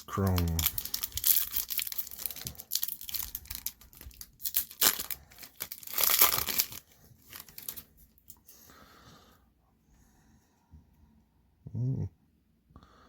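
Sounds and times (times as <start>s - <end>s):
foil wrapper tearing and crinkling: 0.0s - 7.9s.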